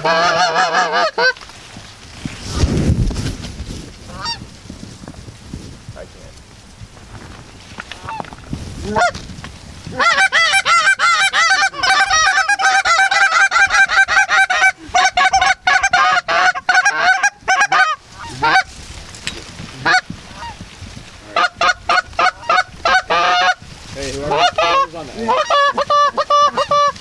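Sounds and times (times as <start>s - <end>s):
goose honking: 0.0s - 1.4s, 4.1s - 4.4s, 8.9s - 9.2s, 9.9s - 18.7s, 19.8s - 20.6s, 21.2s - 27.0s.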